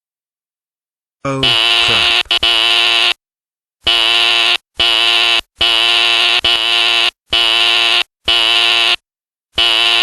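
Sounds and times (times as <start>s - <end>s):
fire alarm horn blasts: 1.4s - 3.2s, 3.8s - 10.0s.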